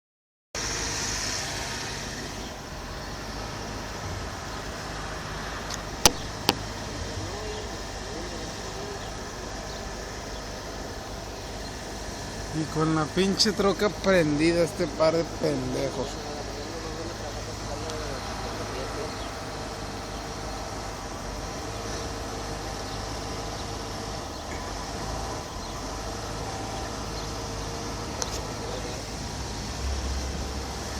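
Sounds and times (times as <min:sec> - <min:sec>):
sharp click: 0:05.7 - 0:06.6.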